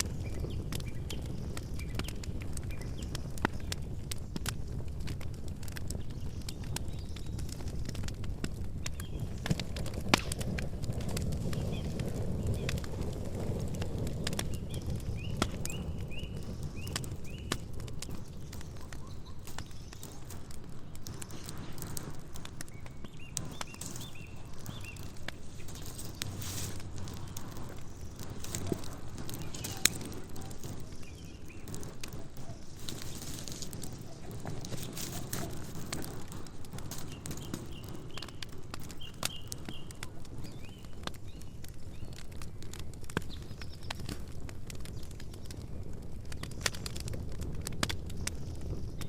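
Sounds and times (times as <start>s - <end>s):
campfire crackling and popping: 0.0s - 49.0s
low rumble of flame: 0.0s - 49.0s
bird chirping: 14.5s - 42.2s.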